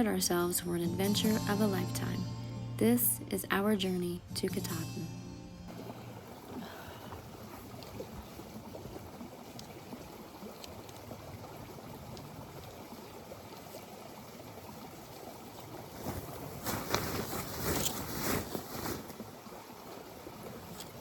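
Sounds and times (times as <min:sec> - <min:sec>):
stream rushing: 0:05.7 - 0:21.0.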